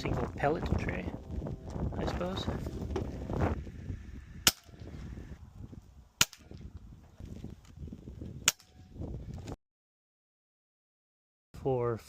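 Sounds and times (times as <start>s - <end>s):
air rifle shots: 4.4s - 4.8s.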